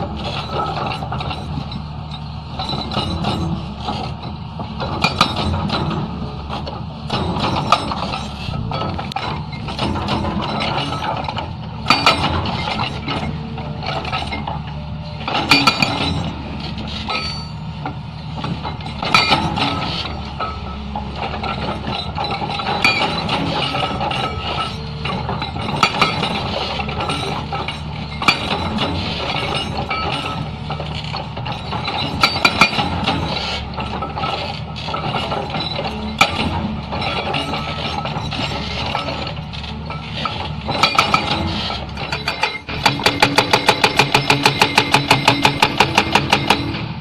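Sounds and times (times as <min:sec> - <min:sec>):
excavator engine running: 0:00.0 - 0:47.0
metallic clinks and knocks: 0:42.0 - 0:46.8.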